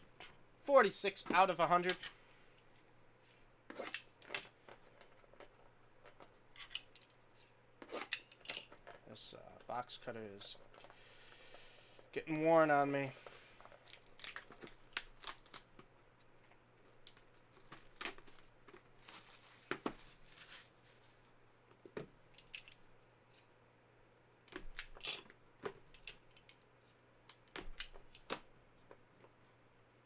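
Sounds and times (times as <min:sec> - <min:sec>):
cardboard and plastic rustling: 0:13.6 - 0:21.4.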